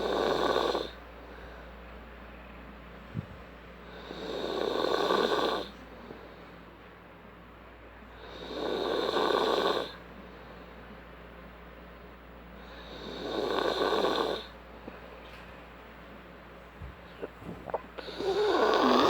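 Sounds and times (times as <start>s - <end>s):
person snoring: 0.0s - 1.0s, 3.9s - 5.7s, 12.7s - 14.5s, 17.2s - 19.0s.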